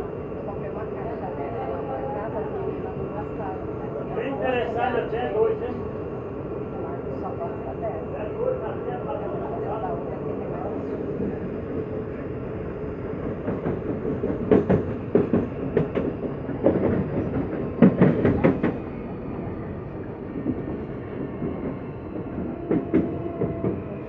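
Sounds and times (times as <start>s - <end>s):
train car running rumble: 0.0s - 24.0s.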